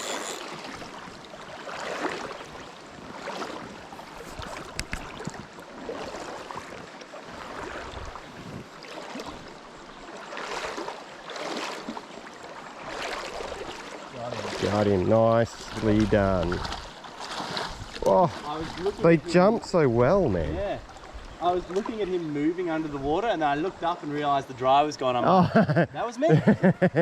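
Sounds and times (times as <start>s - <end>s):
river water rushing: 0.0s - 19.4s.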